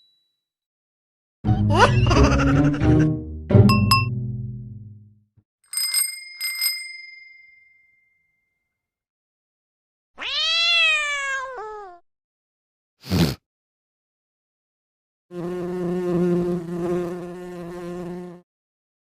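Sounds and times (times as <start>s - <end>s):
small bell dinging: 3.7s - 4.1s, 5.7s - 8.6s
cat meowing: 10.2s - 12.0s.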